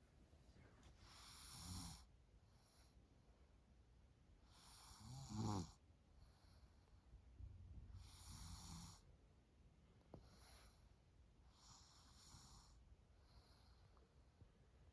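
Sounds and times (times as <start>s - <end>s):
light snore: 1.0s - 2.1s, 4.5s - 5.8s, 8.0s - 9.1s, 11.5s - 13.7s.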